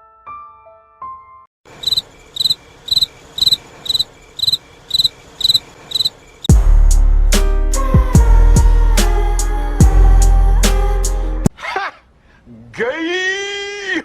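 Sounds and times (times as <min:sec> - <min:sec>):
cricket chirping: 0:01.7 - 0:06.5
music with heavy bass and drums: 0:06.5 - 0:11.5.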